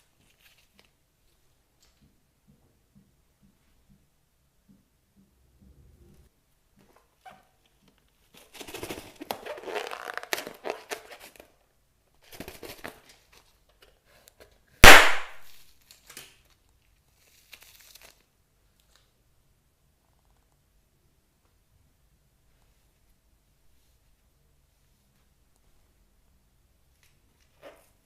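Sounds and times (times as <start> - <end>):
sharp slime pop: 14.8 - 15.5.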